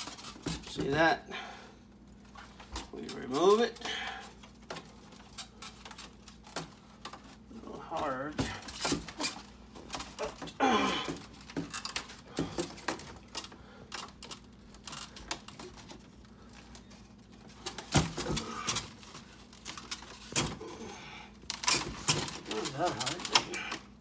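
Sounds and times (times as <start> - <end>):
plastic parts clicking and rattling: 0.0 - 1.1, 2.0 - 24.0.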